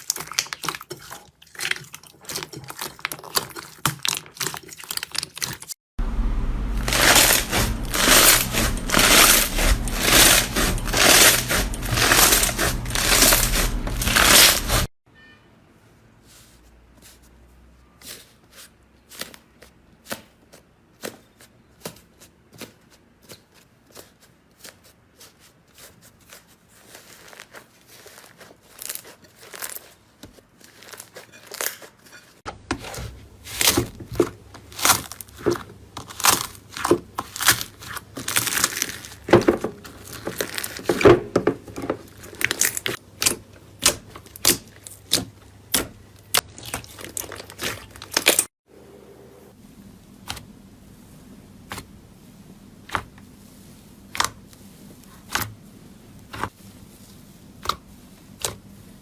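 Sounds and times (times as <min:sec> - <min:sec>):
slime clicking and crackling: 0:42.2 - 0:48.5.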